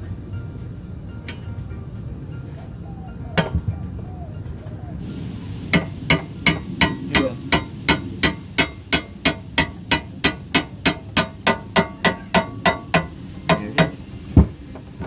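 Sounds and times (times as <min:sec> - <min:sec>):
hammer blows: 0:05.6 - 0:14.6.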